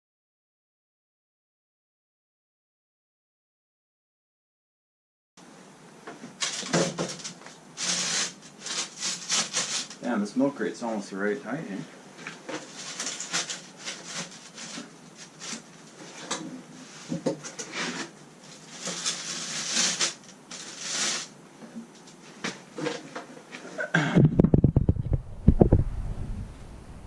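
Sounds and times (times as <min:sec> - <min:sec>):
heavy low thumps: 0:24.2 - 0:27.0.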